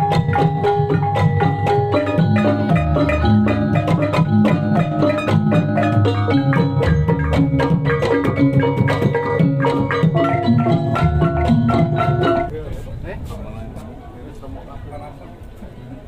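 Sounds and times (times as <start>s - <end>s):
struck metallophones: 0.0s - 12.5s.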